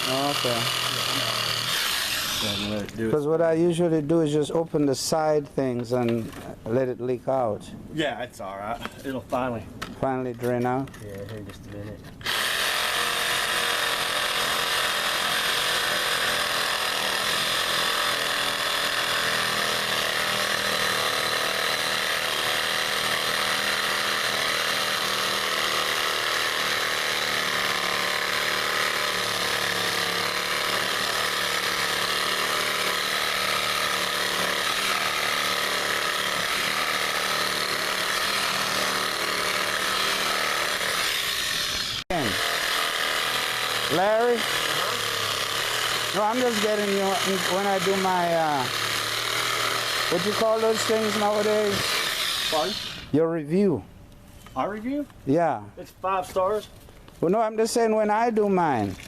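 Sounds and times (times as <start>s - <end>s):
power tool rattling: 0.0s - 2.9s, 12.2s - 53.1s.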